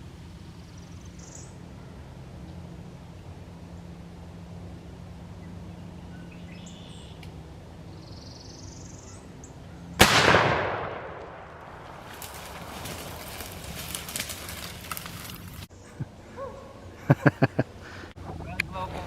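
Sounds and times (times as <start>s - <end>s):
faint bird chirps: 0.6s - 2.1s, 5.4s - 7.2s, 7.9s - 10.0s
shotgun shot: 10.0s - 11.8s.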